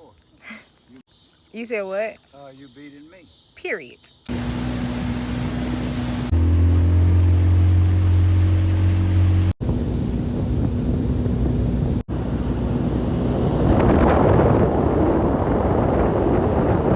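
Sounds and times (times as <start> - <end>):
boat motor humming: 4.3 - 16.9
wind noise on microphone: 8.9 - 16.9.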